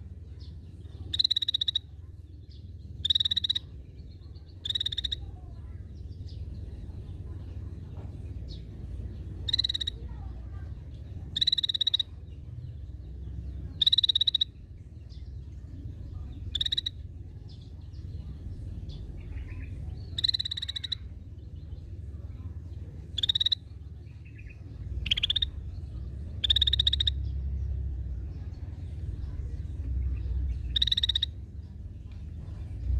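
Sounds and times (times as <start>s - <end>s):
steady low hum: 0.0s - 32.9s
bird giving harsh buzzy calls: 9.5s - 10.1s, 11.4s - 12.1s, 13.8s - 14.6s, 20.1s - 21.1s, 23.2s - 23.7s, 25.0s - 25.6s, 26.4s - 27.3s, 30.7s - 31.4s.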